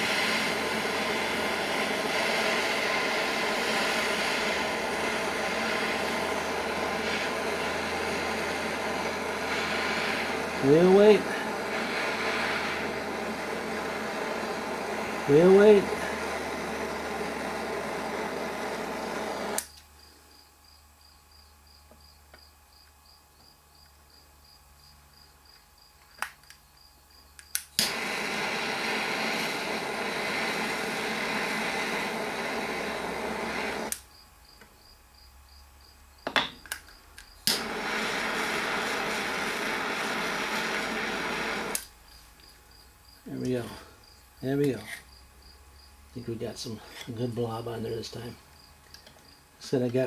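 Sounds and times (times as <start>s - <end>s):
torch igniter click: 0.0s - 19.9s, 27.4s - 34.7s, 36.4s - 42.0s
butane torch hissing: 0.0s - 20.2s, 27.4s - 50.0s.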